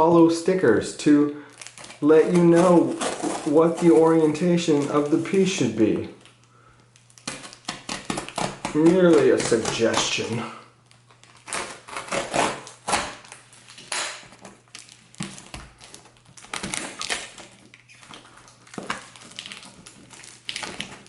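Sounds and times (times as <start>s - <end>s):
cardboard box being cut open: 2.5s - 4.4s, 11.4s - 13.2s.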